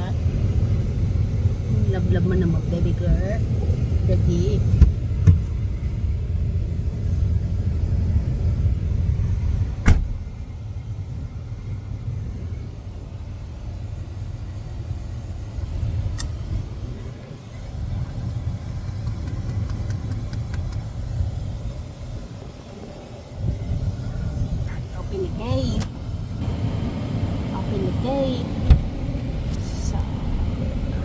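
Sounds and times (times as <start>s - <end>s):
car cabin rumble: 0.0s - 31.0s.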